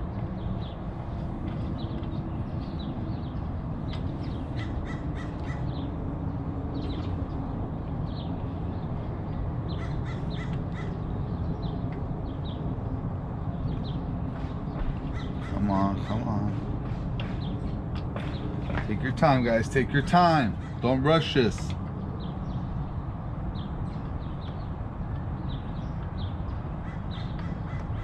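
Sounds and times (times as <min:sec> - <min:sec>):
harsh rapid bird calls: 0:01.6 - 0:06.0, 0:09.6 - 0:12.7, 0:13.6 - 0:22.8, 0:25.4 - 0:28.0.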